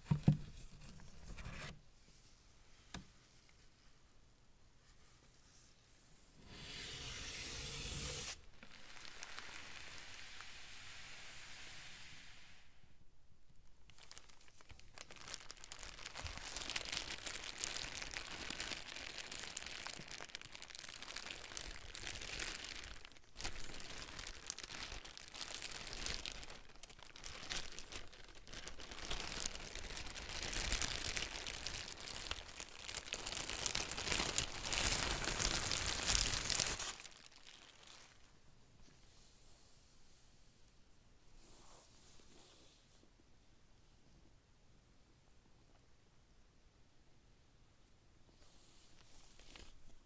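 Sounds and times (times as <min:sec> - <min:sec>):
packaging crinkling and tearing: 0:08.2 - 0:10.4, 0:13.9 - 0:38.3.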